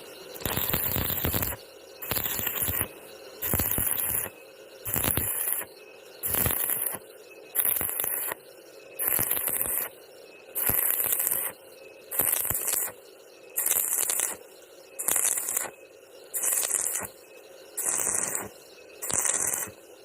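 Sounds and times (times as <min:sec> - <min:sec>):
welding arc crackling: 0:00.4 - 0:04.3, 0:04.9 - 0:07.0, 0:07.6 - 0:08.4, 0:09.0 - 0:09.9, 0:10.6 - 0:11.5, 0:12.2 - 0:13.0, 0:13.6 - 0:14.4, 0:15.0 - 0:15.7, 0:16.4 - 0:17.1, 0:17.8 - 0:19.8
welding hiss: 0:00.4 - 0:07.0, 0:07.6 - 0:08.4, 0:09.0 - 0:09.9, 0:10.6 - 0:13.0, 0:13.6 - 0:14.4, 0:15.0 - 0:15.7, 0:16.3 - 0:17.2, 0:17.8 - 0:19.8.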